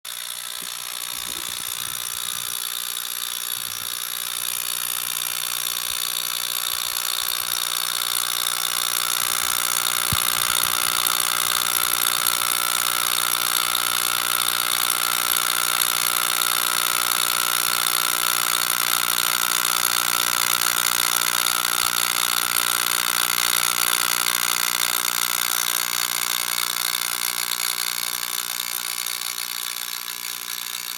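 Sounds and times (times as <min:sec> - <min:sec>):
crackling buzz of electric sparks: 0:00.1 - 0:16.1.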